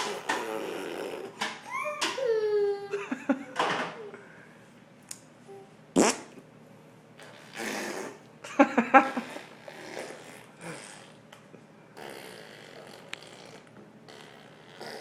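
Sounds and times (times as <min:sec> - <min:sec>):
baby blowing raspberries: 0:00.0 - 0:01.4, 0:07.2 - 0:08.3, 0:09.0 - 0:11.2, 0:12.0 - 0:15.0.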